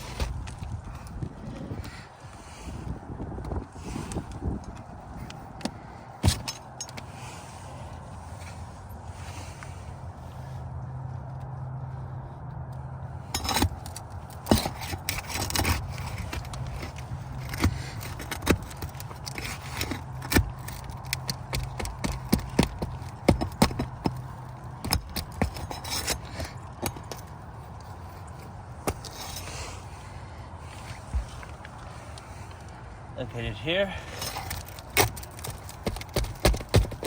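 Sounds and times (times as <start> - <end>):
tools clicking and knocking on shingles: 0.0 - 2.0, 3.4 - 7.3, 13.2 - 32.8, 33.8 - 37.0
metal scraping shingles: 0.0 - 2.8, 13.2 - 37.0.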